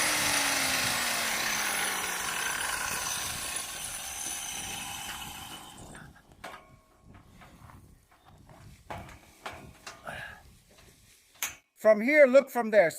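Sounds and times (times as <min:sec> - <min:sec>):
power tool winding down: 0:00.0 - 0:06.0.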